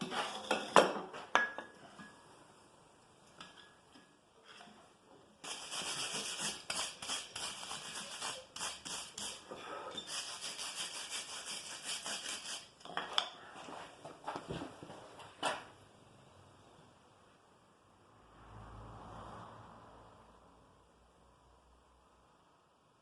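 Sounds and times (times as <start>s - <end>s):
quick scrubbing strokes: 5.4s - 9.4s, 10.0s - 12.7s.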